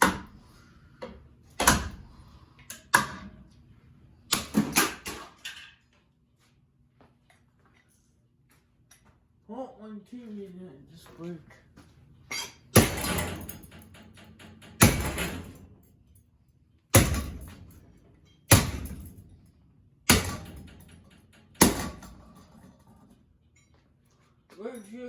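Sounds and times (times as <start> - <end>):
heavy blows smashing fan: 12.7 - 13.8, 16.9 - 17.7
metal rattle: 12.7 - 15.9, 16.9 - 19.4, 20.1 - 23.2.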